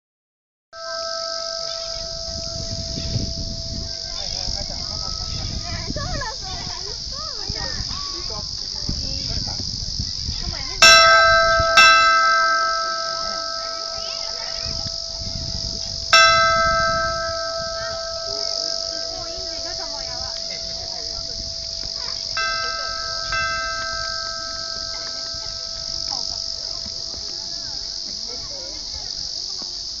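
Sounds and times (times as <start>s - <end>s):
hanging bell strikes ringing: 0.8s - 5.8s, 10.8s - 28.3s.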